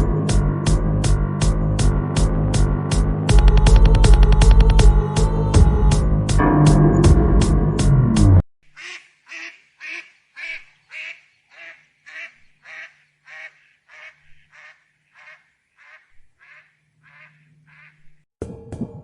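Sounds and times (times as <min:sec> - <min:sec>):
bird calling: 0:08.7 - 0:18.2.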